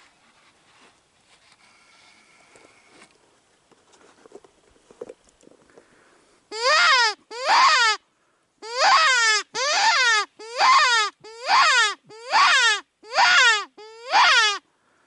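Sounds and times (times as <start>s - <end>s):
faint rustling: 0.0s - 6.5s
animal distress cries from caller: 6.5s - 8.0s, 8.6s - 14.6s.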